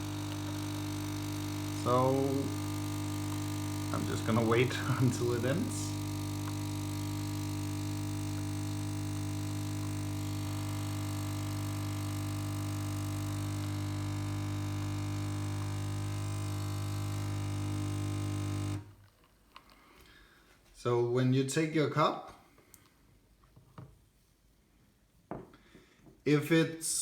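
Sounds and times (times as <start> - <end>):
coffee machine pump humming: 0.0 - 19.0.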